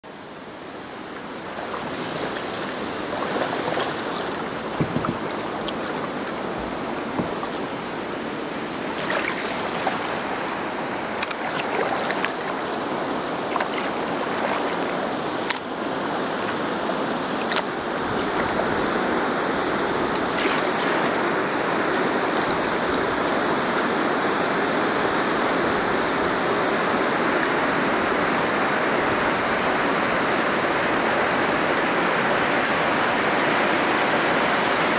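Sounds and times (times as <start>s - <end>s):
river water rushing: 0.1s - 34.9s
small water splashes: 1.2s - 24.0s.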